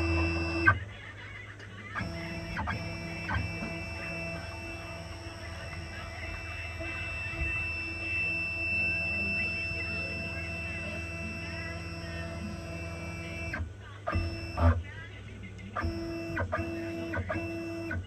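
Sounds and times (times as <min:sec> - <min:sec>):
stepper motors whining: 0:00.0 - 0:00.8, 0:01.8 - 0:14.8, 0:15.8 - 0:18.0.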